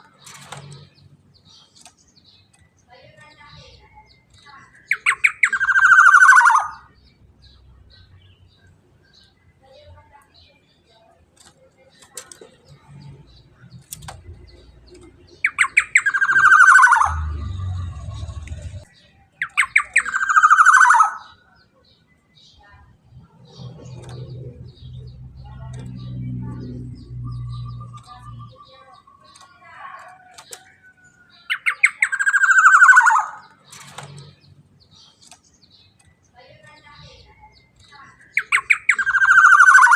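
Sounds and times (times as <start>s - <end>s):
bird calling with trill: 0.0s - 9.8s, 10.4s - 39.9s
oriole calling: 15.4s - 18.8s
low rumble: 17.1s - 18.9s.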